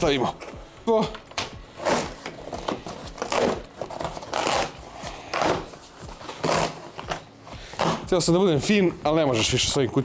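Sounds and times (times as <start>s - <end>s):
cardboard box tearing: 1.8s - 5.7s, 6.3s - 6.9s.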